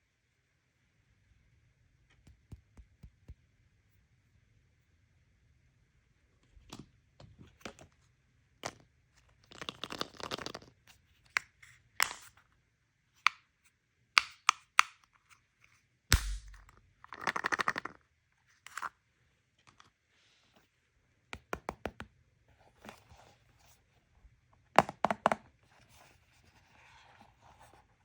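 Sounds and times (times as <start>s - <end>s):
plastic pieces clicking and tapping: 14.2s - 15.1s, 16.2s - 18.0s.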